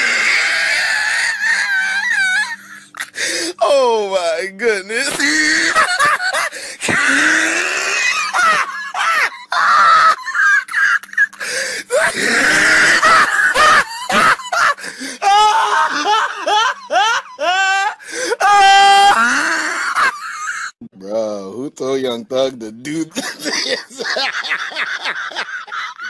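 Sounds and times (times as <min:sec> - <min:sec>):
man laughing hard: 0:05.0 - 0:20.8, 0:23.1 - 0:26.0.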